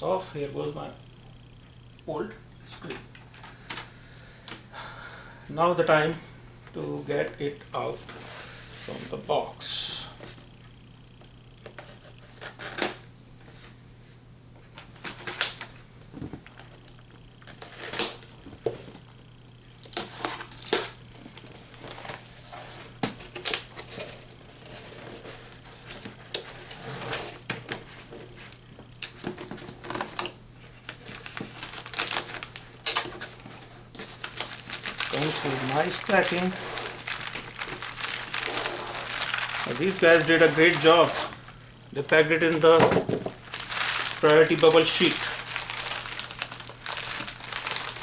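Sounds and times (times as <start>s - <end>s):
packing material rustling: 28.3s - 48.0s.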